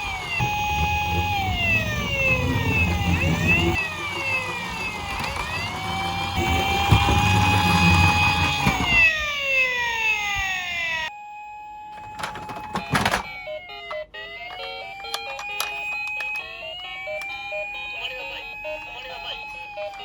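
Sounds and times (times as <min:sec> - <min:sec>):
electronic police siren: 0:00.0 - 0:20.0.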